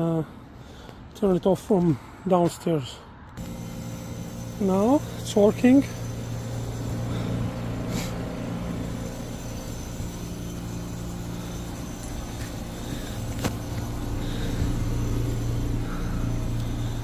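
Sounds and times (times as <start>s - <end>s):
heat pump unit humming: 3.4s - 17.0s.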